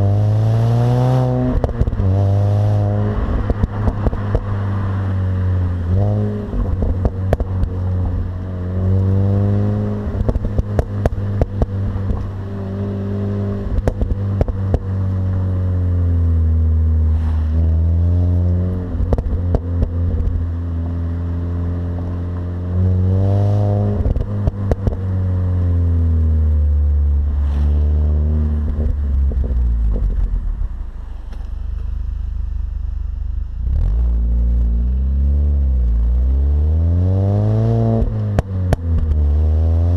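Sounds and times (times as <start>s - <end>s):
car engine revving: 0.0s - 39.9s
exhaust crackles: 23.7s - 39.7s.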